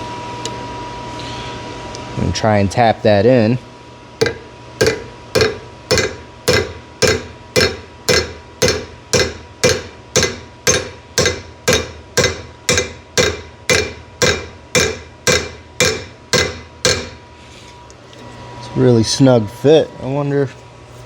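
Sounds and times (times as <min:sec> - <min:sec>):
hammer tapping metal: 0:04.2 - 0:17.2.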